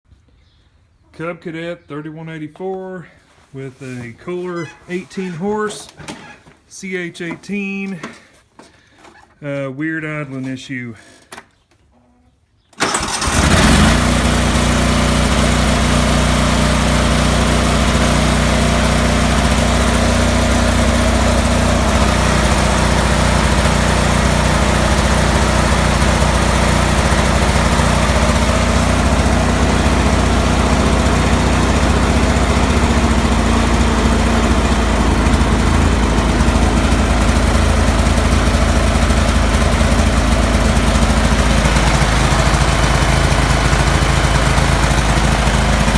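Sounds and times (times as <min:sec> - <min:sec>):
lawn tractor engine idling roughly: 0:12.8 - 0:45.9.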